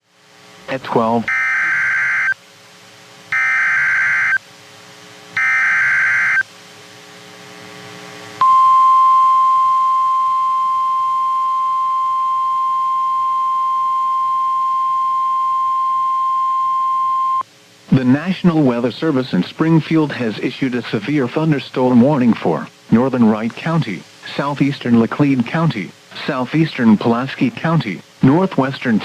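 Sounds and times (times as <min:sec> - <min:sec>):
steady warning alarm tone: 0:01.2 - 0:02.4, 0:03.3 - 0:04.4, 0:05.4 - 0:06.5, 0:08.4 - 0:17.4
data burst tones: 0:03.3 - 0:04.4, 0:05.4 - 0:06.4.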